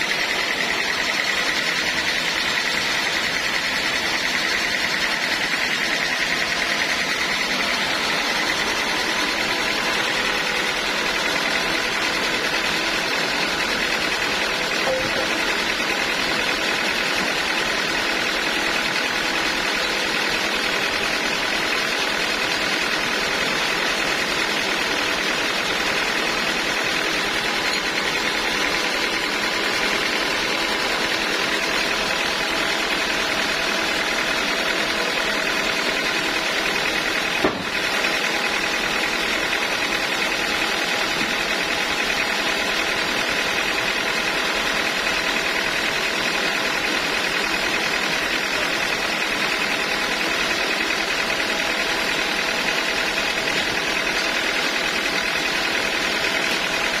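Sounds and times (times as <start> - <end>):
sawmill machinery humming: 0.0 - 57.0
brief knock: 37.4 - 37.7.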